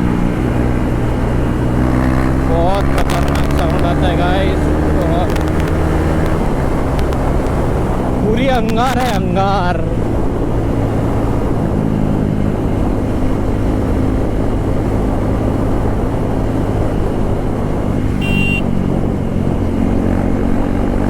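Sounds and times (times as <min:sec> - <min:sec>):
motorcycle engine running loud: 0:00.0 - 0:21.0
high-pitched tone: 0:18.2 - 0:18.7.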